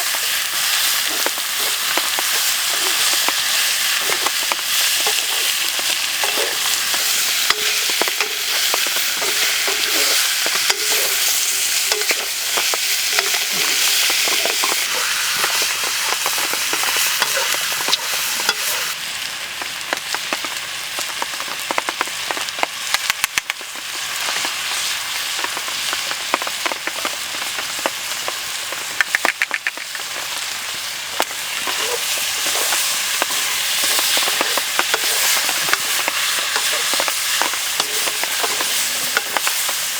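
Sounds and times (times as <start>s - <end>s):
food sizzling in a pan: 0.0s - 39.9s
utensil scraping a pan: 0.1s - 19.0s, 31.2s - 39.9s.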